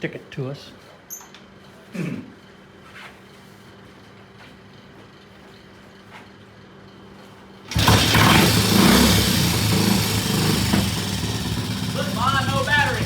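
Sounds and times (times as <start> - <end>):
motorcycle engine starting and idling: 7.6 - 13.0.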